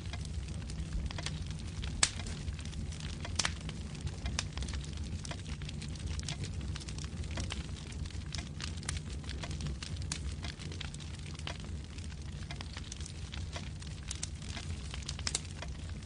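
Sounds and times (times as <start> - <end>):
fire pops and snaps: 0.0 - 16.0
flames rumbling: 0.0 - 16.0.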